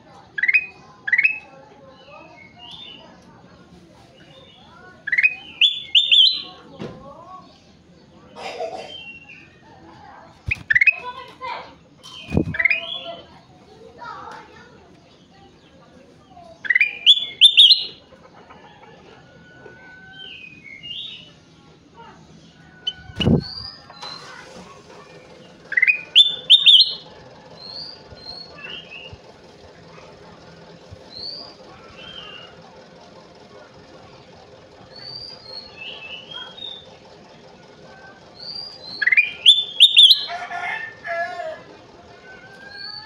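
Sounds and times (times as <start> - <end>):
bird chirping and singing: 0.4 - 1.5, 4.3 - 6.6, 10.4 - 11.1, 12.0 - 13.2, 16.6 - 18.0, 22.8 - 24.3, 25.6 - 29.2, 31.0 - 32.5, 34.9 - 36.9, 38.3 - 40.4, 42.5 - 43.0
bulbul singing whistled notes: 5.1 - 6.6, 10.5 - 11.0, 16.7 - 18.0, 25.7 - 27.0, 38.4 - 40.3.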